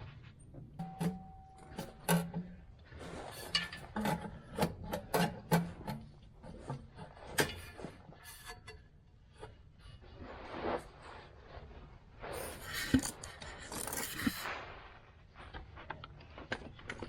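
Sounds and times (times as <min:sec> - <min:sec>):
metal clinks and scraping: 0:00.8 - 0:06.0, 0:12.5 - 0:14.5.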